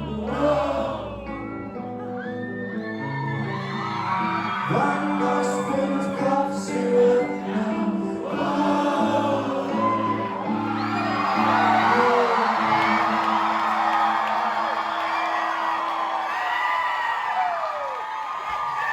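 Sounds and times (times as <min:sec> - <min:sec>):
crowd singing along: 0:00.0 - 0:01.5, 0:04.7 - 0:14.5
crowd whooping and cheering: 0:00.0 - 0:18.9.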